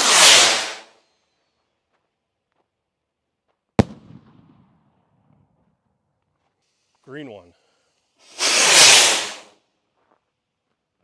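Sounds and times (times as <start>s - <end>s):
firework rocket hissing: 0.0s - 1.0s, 8.2s - 9.6s
firework bang: 3.8s - 4.8s.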